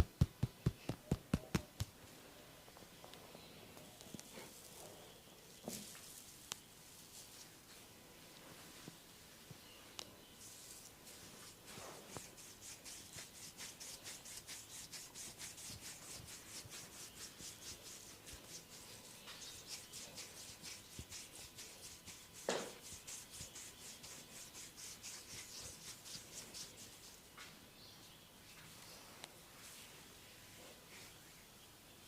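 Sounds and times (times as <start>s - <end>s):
rubbing on hair and scalp: 10.4s - 27.3s.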